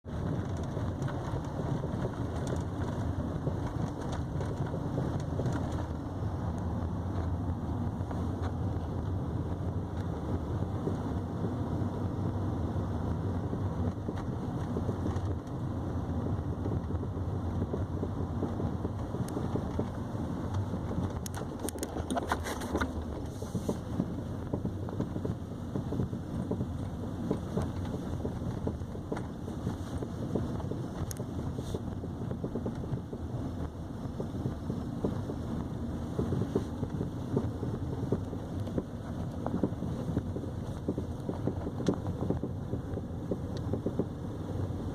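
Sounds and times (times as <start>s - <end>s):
car road noise: 0.0s - 44.9s
suspension clunks and metallic knocks: 13.4s - 44.9s.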